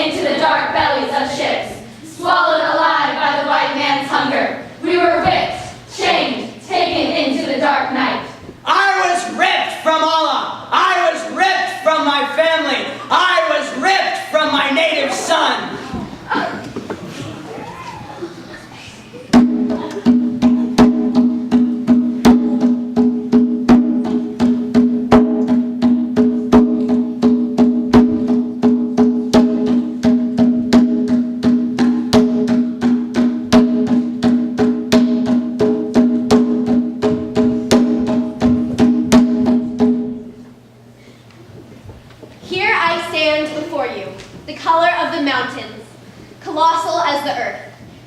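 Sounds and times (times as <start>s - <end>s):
wood block and drum strikes: 19.3s - 40.2s.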